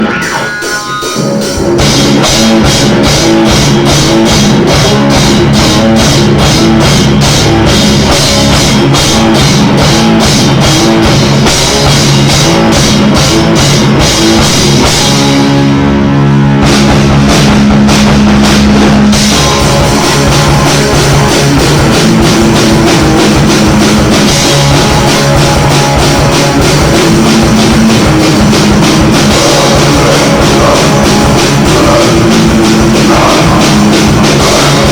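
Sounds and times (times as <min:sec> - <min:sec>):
drum kit: 0:00.0 - 0:34.9
held guitar notes ringing: 0:00.0 - 0:34.9
rock band playing: 0:00.0 - 0:34.9.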